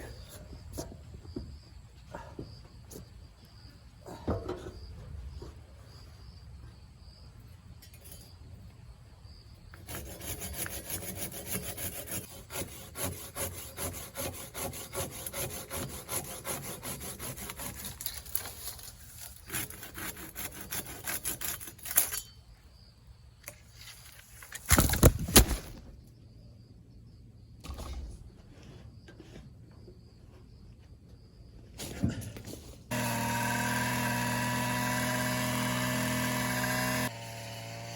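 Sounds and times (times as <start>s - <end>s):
hand saw cutting wood: 9.8s - 22.2s, 32.9s - 37.9s.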